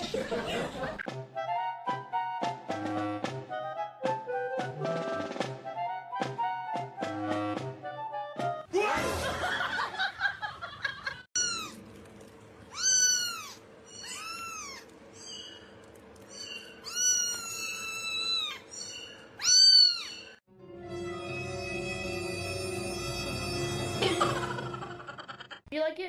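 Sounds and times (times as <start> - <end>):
cat meowing: 11.4 - 11.8, 12.7 - 14.9, 16.4 - 18.7, 19.4 - 20.2.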